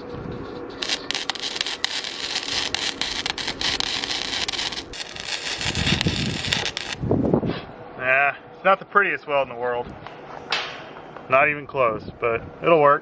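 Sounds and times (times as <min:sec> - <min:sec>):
welding arc crackling: 0:00.8 - 0:07.0.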